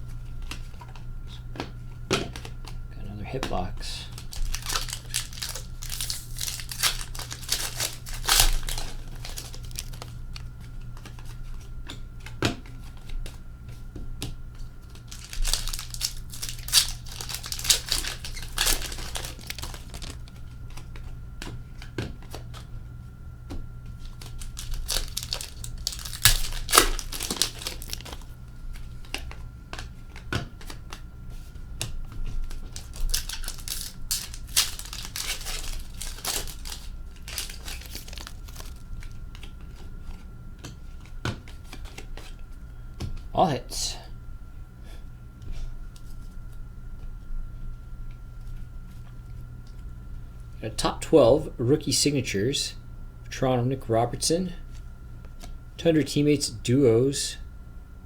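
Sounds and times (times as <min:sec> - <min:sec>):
faint steady hum: 0:00.0 - 0:58.0
wrappers crinkled by hand: 0:03.4 - 0:13.4, 0:14.5 - 0:21.2, 0:23.9 - 0:31.1, 0:31.8 - 0:42.7
packaging being torn open: 0:04.1 - 0:10.5, 0:14.8 - 0:20.4, 0:24.0 - 0:28.4, 0:32.4 - 0:39.5.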